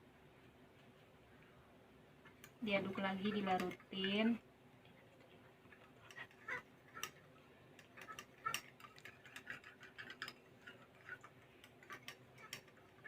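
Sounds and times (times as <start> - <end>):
stirrer clinking against glass beaker: 7.8 - 13.0.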